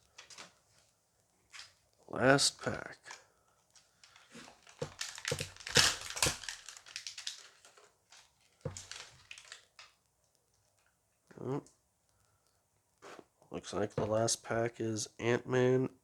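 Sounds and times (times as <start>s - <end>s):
foil pack tearing and crinkling: 4.0s - 9.9s.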